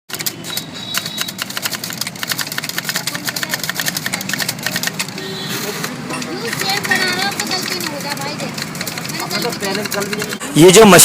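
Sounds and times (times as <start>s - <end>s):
typewriter key clacks: 0.1s - 5.2s, 5.8s - 10.4s.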